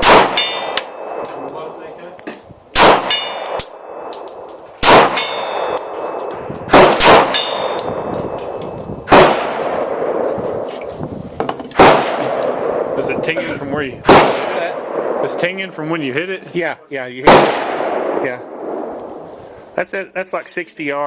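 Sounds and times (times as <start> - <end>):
pistol shots: 0.0 - 1.5, 2.7 - 10.7, 11.7 - 12.9, 14.0 - 15.4, 17.2 - 19.0
steel target ringing: 3.0 - 8.4.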